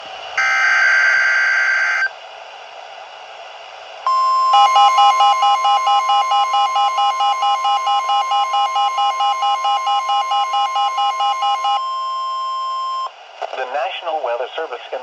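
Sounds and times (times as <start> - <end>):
steady alert tone: 4.1 - 12.0
rapid pulsing beeping: 4.1 - 12.3
data header tones: 4.1 - 13.1.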